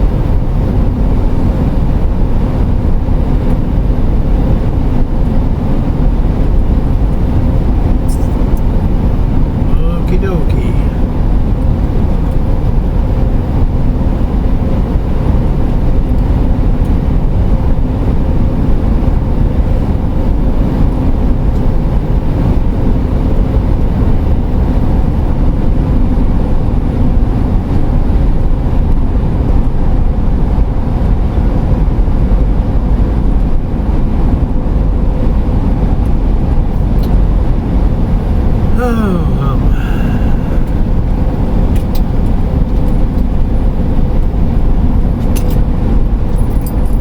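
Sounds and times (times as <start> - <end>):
road and engine rumble: 0.0 - 28.6, 33.8 - 47.0
faint steady hum: 36.8 - 44.0.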